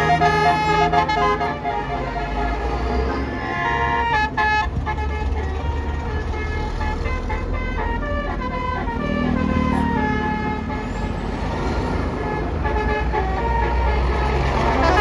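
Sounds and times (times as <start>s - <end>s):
multi-note air horn tune: 0.0s - 5.3s, 12.2s - 15.0s
bus engine rumble: 0.0s - 15.0s.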